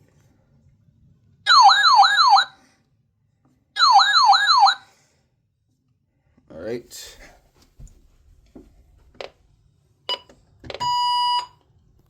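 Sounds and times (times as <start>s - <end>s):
electronic alert siren yelping: 1.5s - 2.5s, 3.8s - 4.8s.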